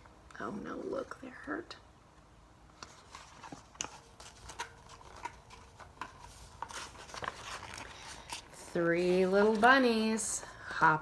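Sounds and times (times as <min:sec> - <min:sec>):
paper book page turning: 0:02.8 - 0:10.2.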